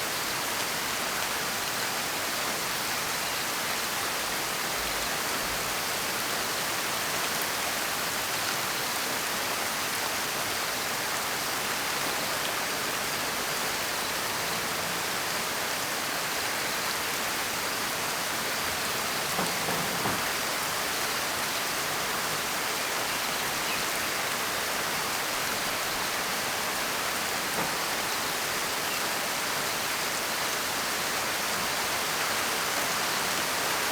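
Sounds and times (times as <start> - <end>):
heavy rain falling: 0.1 - 33.9.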